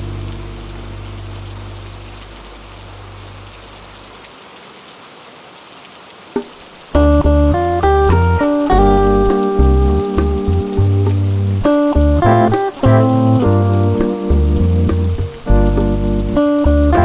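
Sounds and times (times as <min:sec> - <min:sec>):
plucked guitar-like notes: 0:00.0 - 0:02.6, 0:07.0 - 0:17.0
jazz music: 0:00.0 - 0:03.4, 0:07.0 - 0:17.0
rain hiss: 0:00.0 - 0:17.0.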